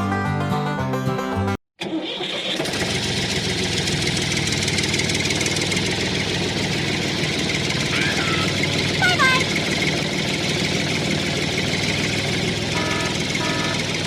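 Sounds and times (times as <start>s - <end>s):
music: 0.0s - 1.6s
engine chugging: 1.8s - 14.0s.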